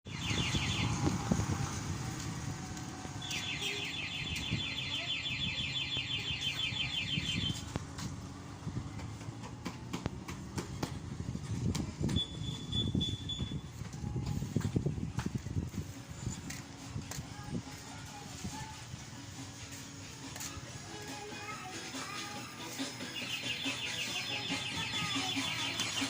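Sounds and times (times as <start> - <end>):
high-pitched chirping trill: 0.1 - 1.2, 3.2 - 7.7, 12.2 - 13.7, 21.4 - 26.0.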